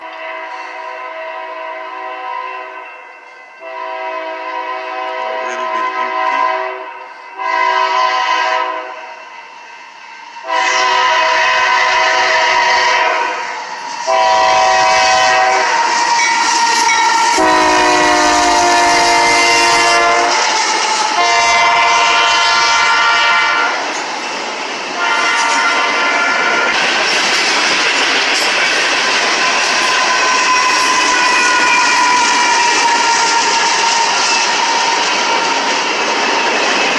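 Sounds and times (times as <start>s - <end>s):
locomotive air horn blasts: 0.0s - 2.9s, 3.6s - 9.1s, 10.4s - 23.8s, 25.0s - 26.8s
passing train rumble and rail clatter: 0.0s - 36.9s.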